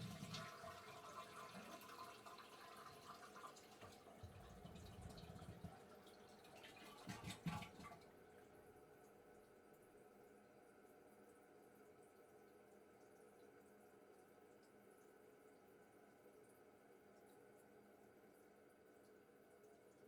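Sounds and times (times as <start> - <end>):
toilet flushing: 0.0 - 8.3.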